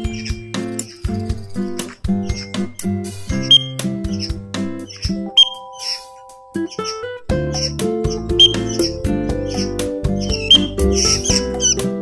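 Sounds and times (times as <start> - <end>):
high bird-like chirps: 0.0 - 11.9
music with steady beat: 0.0 - 12.0.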